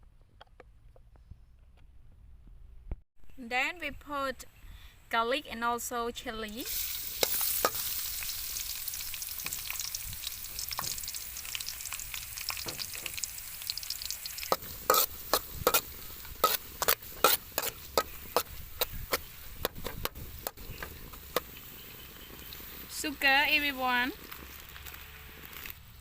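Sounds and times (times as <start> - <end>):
garlic and chili sizzling in oil: 5.8 - 26.0.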